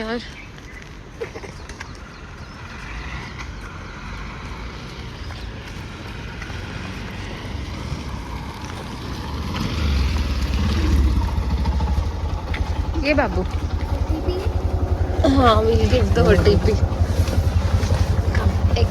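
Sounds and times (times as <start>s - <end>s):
auto-rickshaw engine rumble: 0.0s - 18.9s.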